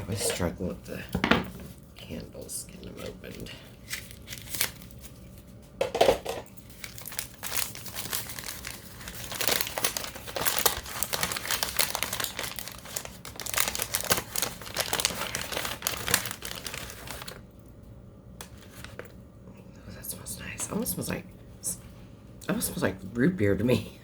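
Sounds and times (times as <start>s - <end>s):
candle wrapping crinkling and tearing: 2.8s - 5.5s, 6.6s - 17.4s, 18.4s - 19.1s.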